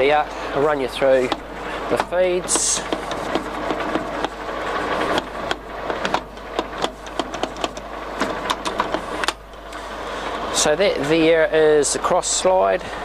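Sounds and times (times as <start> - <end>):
metal lathe whirring: 0.0 - 13.0
machine clicks and knocks: 1.2 - 9.6.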